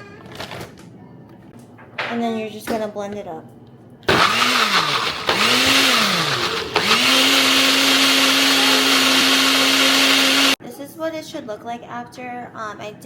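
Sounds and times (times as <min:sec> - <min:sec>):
electric blender motor: 0:04.1 - 0:10.6.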